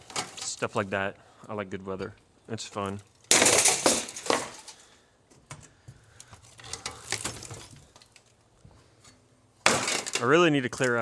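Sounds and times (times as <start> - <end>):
junk clattering and clinking: 3.2 - 4.8.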